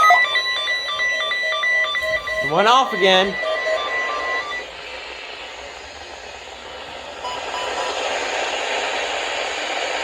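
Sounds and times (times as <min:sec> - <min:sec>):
short beep: 0:00.0 - 0:04.7
radio static hiss: 0:02.0 - 0:10.0.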